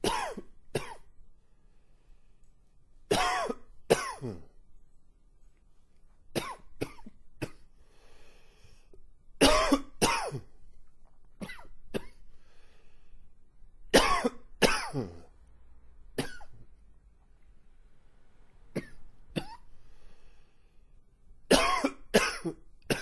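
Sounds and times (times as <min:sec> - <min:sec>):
man coughing wheezily: 0:00.0 - 0:01.0, 0:03.1 - 0:04.5, 0:09.4 - 0:10.5, 0:14.0 - 0:15.3, 0:21.5 - 0:23.0
drawn breaths: 0:07.8 - 0:09.0, 0:12.3 - 0:13.4, 0:19.7 - 0:21.0.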